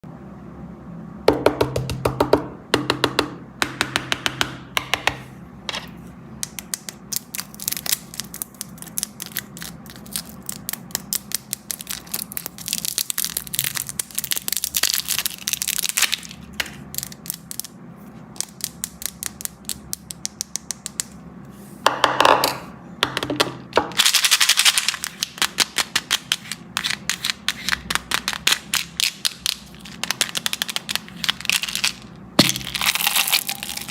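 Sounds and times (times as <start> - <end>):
candy cracking and crunching: 7.0 - 17.8, 24.0 - 33.9.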